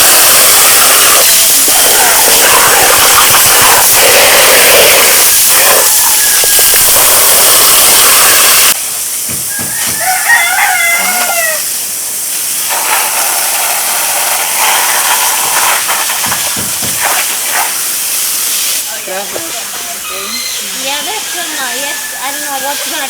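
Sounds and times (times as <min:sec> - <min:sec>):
steady loud hiss: 0:00.0 - 0:23.0
rooster crowing: 0:09.4 - 0:11.8, 0:21.3 - 0:23.0.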